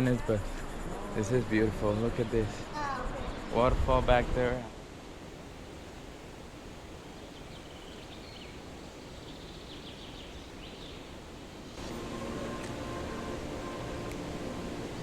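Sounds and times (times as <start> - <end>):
bird chirping: 7.1 - 11.2
steady multi-tone hum: 11.5 - 15.0
waterfall rushing: 11.8 - 15.0.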